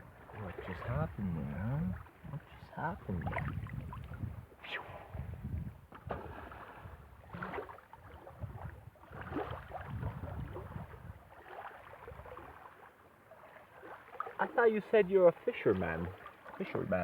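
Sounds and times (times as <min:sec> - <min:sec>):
water sloshing and splashing: 0:00.0 - 0:05.1, 0:05.8 - 0:17.0
wind buffeting microphone: 0:00.0 - 0:12.6.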